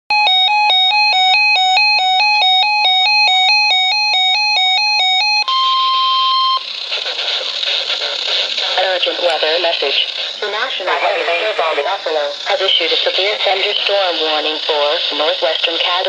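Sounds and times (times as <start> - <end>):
two-tone electronic warbling alarm: 0.1 - 8.2
steady alarm tone: 0.1 - 15.8
radio hiss: 6.6 - 16.0.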